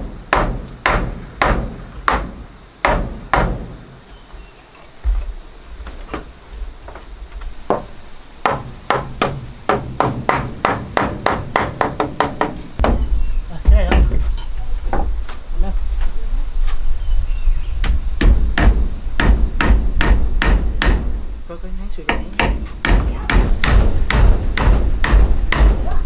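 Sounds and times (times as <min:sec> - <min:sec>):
hammer striking wood: 0:00.0 - 0:03.8, 0:07.7 - 0:14.3, 0:17.8 - 0:21.3, 0:22.1 - 0:26.0.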